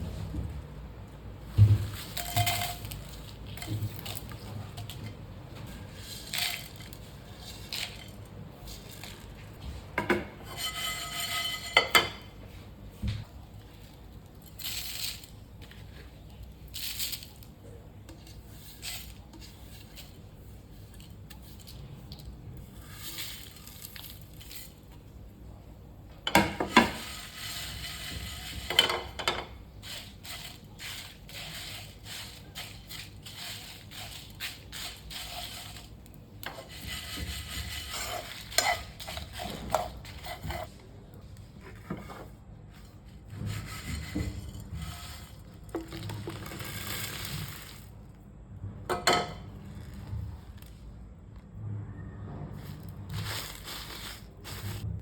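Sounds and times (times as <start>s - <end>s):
utensils and dishes clinking: 1.9s - 9.4s, 10.0s - 12.4s, 26.3s - 40.7s, 48.9s - 50.0s.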